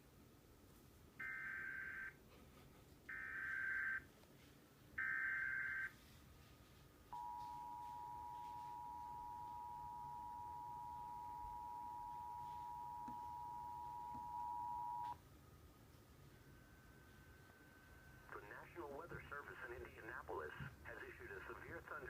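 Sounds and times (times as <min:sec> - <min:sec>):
steady two-tone attention signal: 0:07.2 - 0:15.2.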